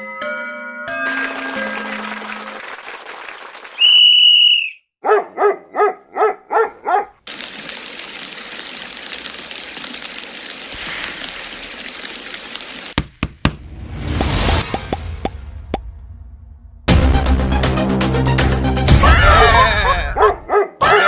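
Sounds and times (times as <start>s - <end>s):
cartoon whistle: 3.8s - 4.8s.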